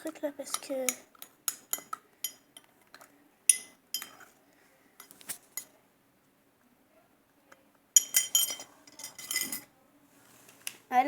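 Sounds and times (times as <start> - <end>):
utensil clinking against bowl: 0.1 - 4.3, 8.0 - 9.7.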